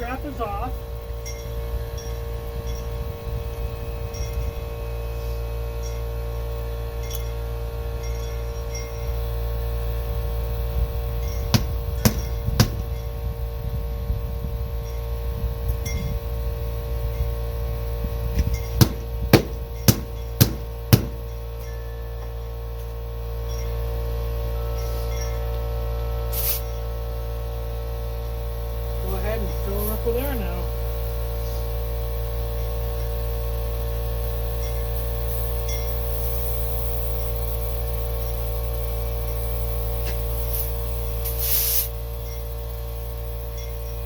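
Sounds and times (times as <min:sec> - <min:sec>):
steady hum: 0:00.0 - 0:44.0
sharp metallic knocks: 0:11.5 - 0:13.0, 0:18.4 - 0:21.4.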